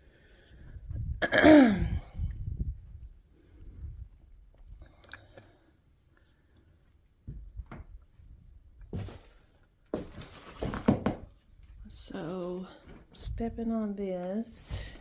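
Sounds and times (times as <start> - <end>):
soft footsteps crunching on old floor: 8.8 - 15.0.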